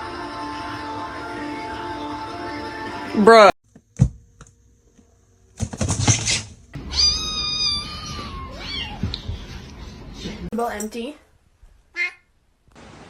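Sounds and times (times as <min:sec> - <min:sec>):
rustling scuffle: 0:05.6 - 0:06.6
cat meowing: 0:06.8 - 0:09.2.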